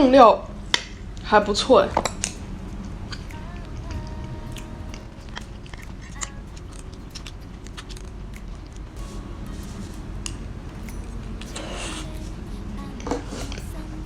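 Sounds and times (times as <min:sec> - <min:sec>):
person chewing food: 0:02.0 - 0:12.4.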